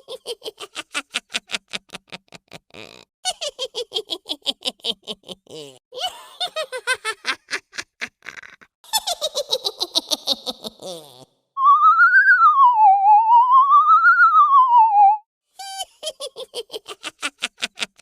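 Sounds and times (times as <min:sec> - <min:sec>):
high-pitched cackling laughter: 0:00.0 - 0:11.3, 0:15.6 - 0:18.0.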